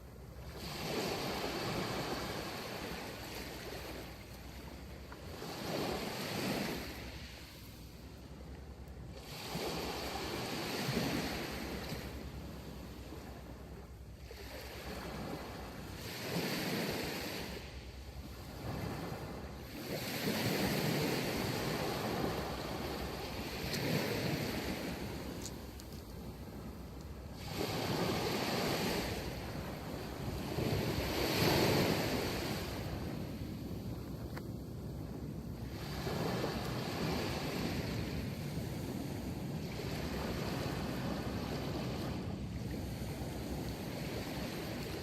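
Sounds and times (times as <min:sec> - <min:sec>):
wind on microphone: 0:00.0 - 0:07.6, 0:09.1 - 0:45.0
waves breaking on a beach: 0:00.0 - 0:45.0.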